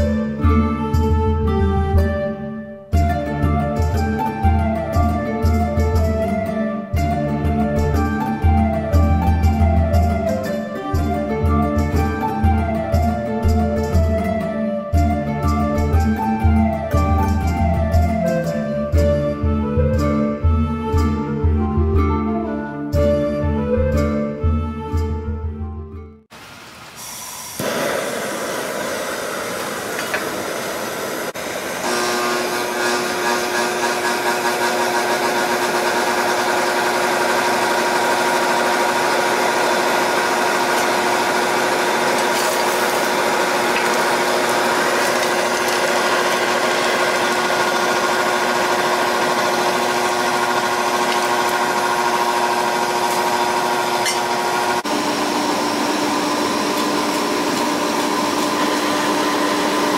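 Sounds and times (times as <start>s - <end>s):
electric motor humming with whine: 27.2s - 59.9s.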